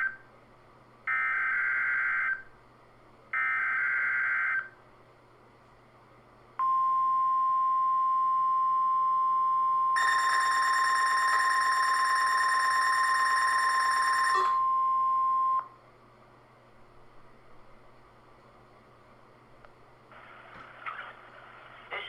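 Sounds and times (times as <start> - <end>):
steady warning alarm tone: 10.0 - 15.6.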